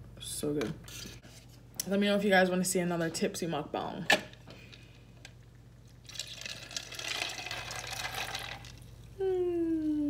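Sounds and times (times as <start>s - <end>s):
liquid being poured: 5.9s - 9.0s.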